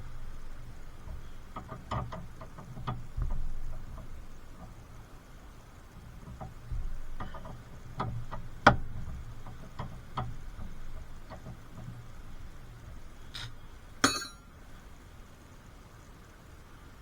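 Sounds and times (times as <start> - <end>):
hand tools clicking and knocking: 14.0 - 14.4.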